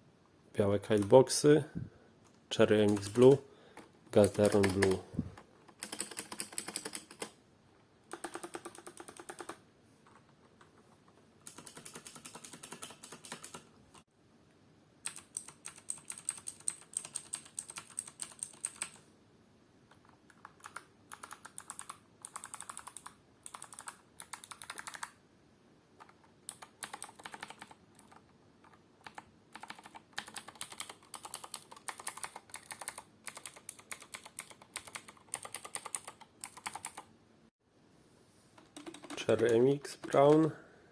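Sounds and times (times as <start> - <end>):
mechanical keyboard typing clicks: 0.9 - 1.2, 2.8 - 3.4, 4.1 - 5.0, 5.7 - 7.4, 8.1 - 9.6, 11.4 - 13.7, 15.0 - 19.0, 20.0 - 25.2, 26.0 - 37.1, 38.6 - 40.5.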